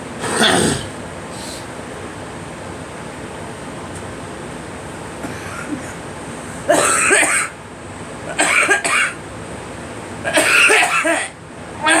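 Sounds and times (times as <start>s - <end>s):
girl coughing: 0.2s - 1.0s, 6.7s - 7.6s, 8.3s - 9.2s, 10.3s - 12.0s.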